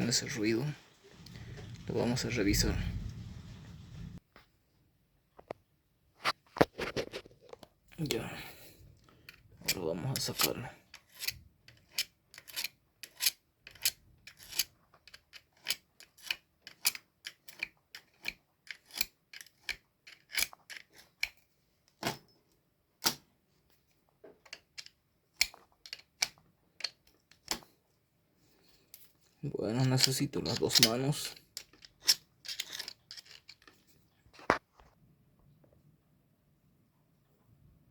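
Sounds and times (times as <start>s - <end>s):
metal tools clicking and tapping: 9.2s - 21.4s, 24.4s - 27.6s, 29.8s - 33.9s.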